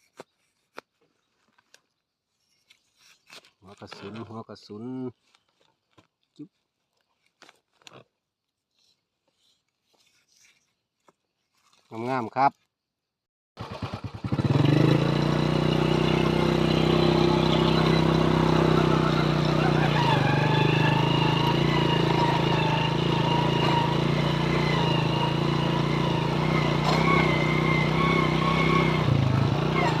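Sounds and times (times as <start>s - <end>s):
engine humming: 13.8s - 30.0s
high engine whine: 14.5s - 30.0s.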